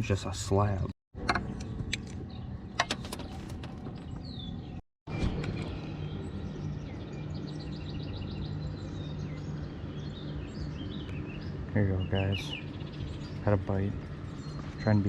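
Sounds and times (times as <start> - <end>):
small birds chirping: 1.2 - 15.0
steady low hum: 3.8 - 15.0.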